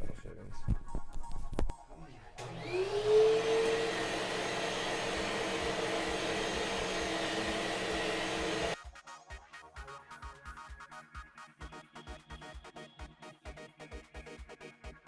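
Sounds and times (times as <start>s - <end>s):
vacuum cleaner running: 2.4s - 8.8s.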